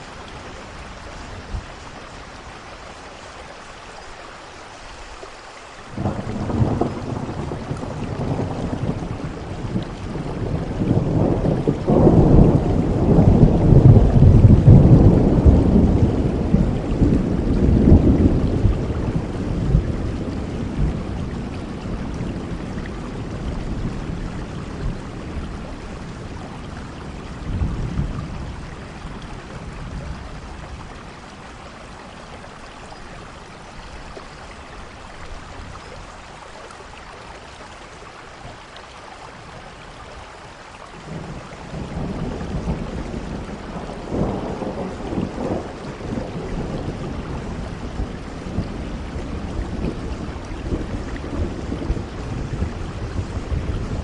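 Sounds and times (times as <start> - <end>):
steady rain: 0.0 - 54.0
thunder rumbling: 6.0 - 31.3, 41.0 - 54.0.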